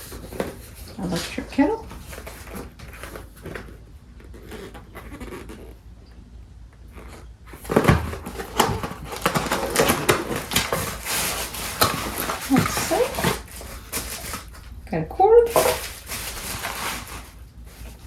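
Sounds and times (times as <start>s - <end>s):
packaging crinkling and rustling: 0.0s - 5.9s, 6.8s - 18.0s.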